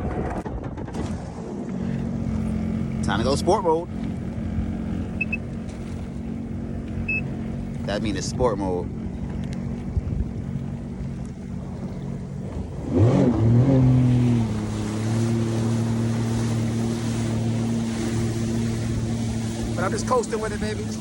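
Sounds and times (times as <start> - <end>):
wind noise: 0.0 - 2.3, 9.1 - 21.0
water noise: 0.0 - 21.0
jet ski engine revving: 0.4 - 21.0.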